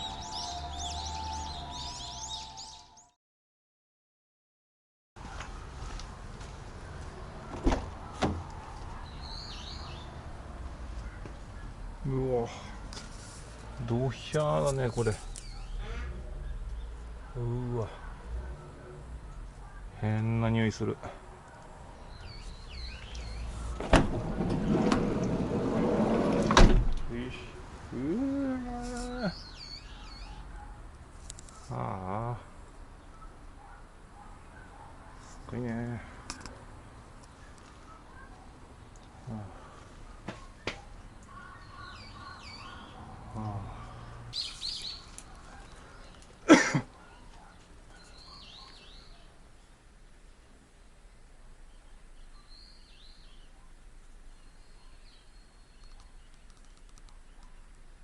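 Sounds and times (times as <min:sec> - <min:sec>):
loud harsh bird call: 0:00.0 - 0:03.1
small birds chirping: 0:00.0 - 0:03.2, 0:08.6 - 0:10.3, 0:13.6 - 0:20.8, 0:21.4 - 0:23.9, 0:27.1 - 0:49.8, 0:51.5 - 0:58.0
sharp clicks: 0:56.0 - 0:57.6.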